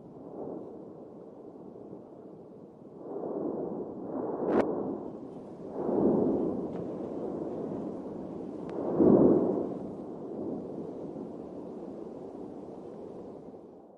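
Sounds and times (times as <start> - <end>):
volcanic booming blasts: 4.8 - 13.6
volcano deep rumbling roar: 5.2 - 13.4.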